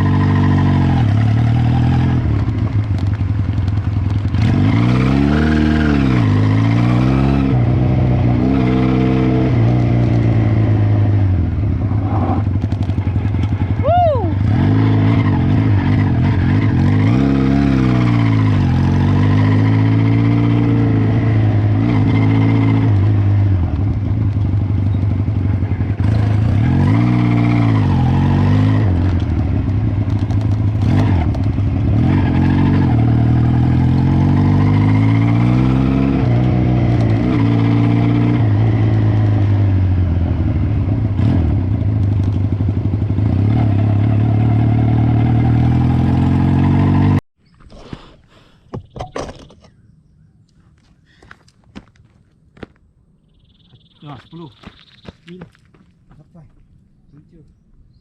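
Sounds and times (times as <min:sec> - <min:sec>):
motorcycle engine revving: 0:00.0 - 0:47.2.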